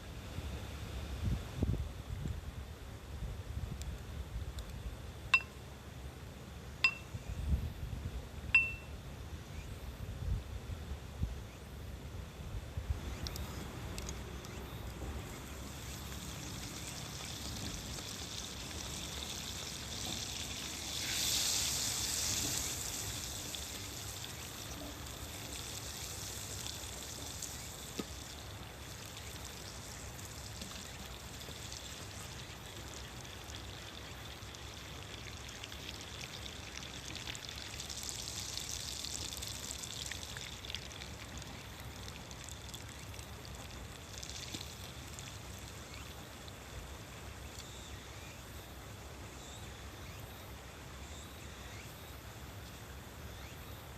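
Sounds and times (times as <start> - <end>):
food sizzling in a frying pan: 15.5 - 32.3.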